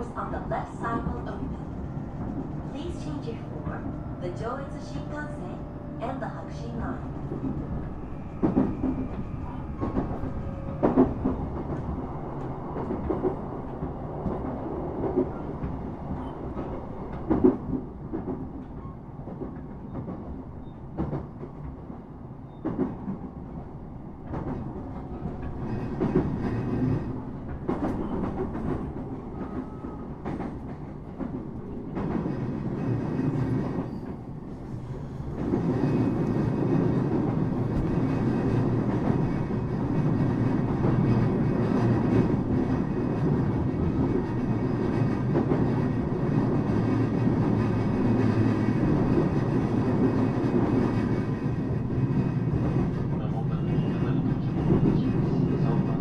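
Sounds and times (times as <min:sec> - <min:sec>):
train wheels rumbling on rails: 0:00.0 - 0:56.0
clacks over rail joints: 0:22.5 - 0:23.3, 0:24.2 - 0:34.2.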